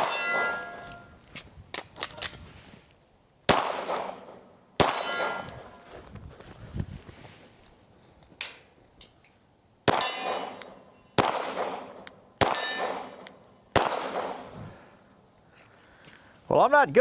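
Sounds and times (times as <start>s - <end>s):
metallic clang of steel targets: 0.0s - 1.1s, 4.8s - 5.9s, 9.9s - 13.4s
gunshots: 3.5s - 5.8s, 9.9s - 10.6s, 11.2s - 13.2s, 13.8s - 14.5s.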